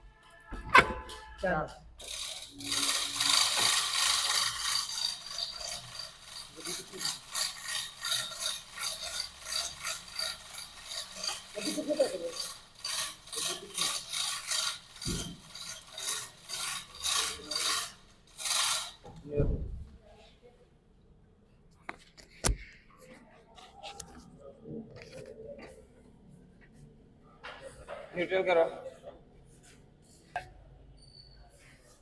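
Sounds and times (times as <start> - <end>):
hand tool rasping metal: 2.0 - 19.0.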